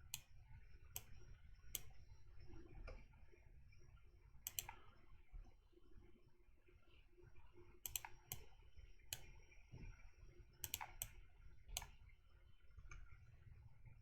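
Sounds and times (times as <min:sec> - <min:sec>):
mouse and keyboard clicks: 0:04.5 - 0:04.8, 0:07.9 - 0:08.5, 0:10.6 - 0:11.2.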